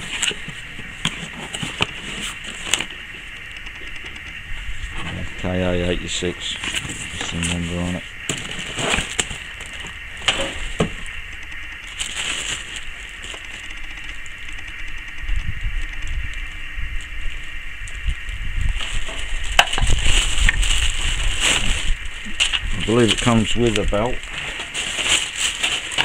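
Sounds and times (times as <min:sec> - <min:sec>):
packaging rustling: 0:06.5 - 0:14.6, 0:18.8 - 0:26.0.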